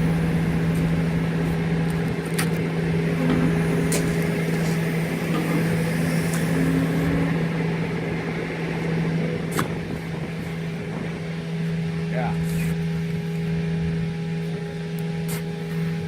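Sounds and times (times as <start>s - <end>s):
engine humming steadily: 0.0s - 16.0s.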